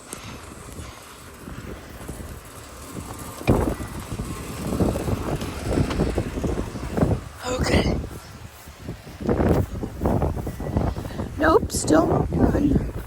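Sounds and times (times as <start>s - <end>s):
storm wind buffeting microphone: 0.0s - 13.0s.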